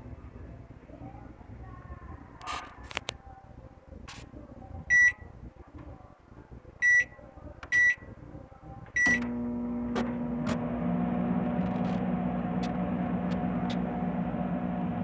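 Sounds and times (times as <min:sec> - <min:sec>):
microwave keypad beeping: 0:04.9 - 0:05.3, 0:06.8 - 0:08.1, 0:09.0 - 0:10.6
microwave humming: 0:08.9 - 0:15.0
microwave click: 0:09.0 - 0:14.9.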